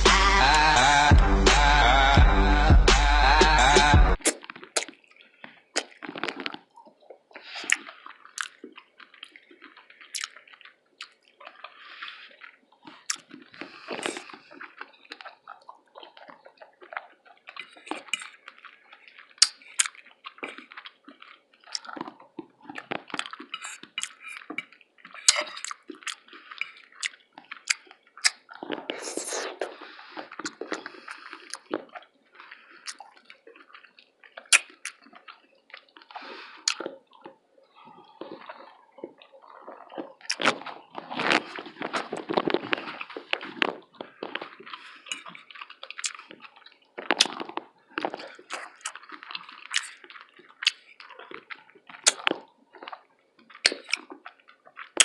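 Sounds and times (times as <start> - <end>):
chewing: 4.1 - 55.0
lip-smacking clicks: 12.3 - 37.4, 38.0 - 53.0, 53.6 - 55.0.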